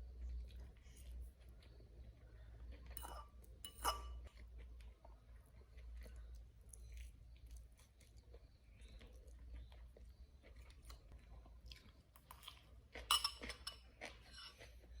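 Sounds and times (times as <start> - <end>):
soft chewing: 0.0 - 15.0
cutlery clinking on plate: 3.0 - 4.2, 13.1 - 14.6.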